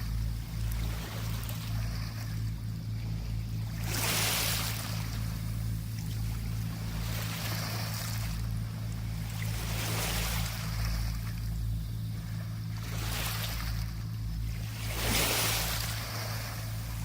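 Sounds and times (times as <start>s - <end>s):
steady low hum: 0.0s - 17.0s
small sea waves washing onto beach: 3.7s - 11.5s, 12.2s - 17.0s.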